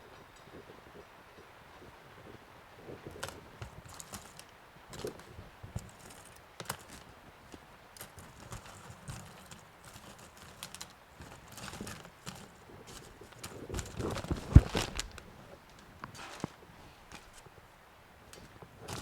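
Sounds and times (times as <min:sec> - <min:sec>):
small tools clicking and tapping: 0:03.0 - 0:17.5.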